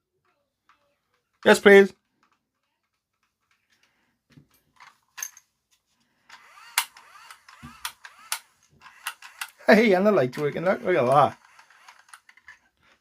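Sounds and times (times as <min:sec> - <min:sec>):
small battery motor whirring: 0:06.3 - 0:09.6, 0:10.7 - 0:12.5
plastic toy clicks: 0:06.3 - 0:12.7.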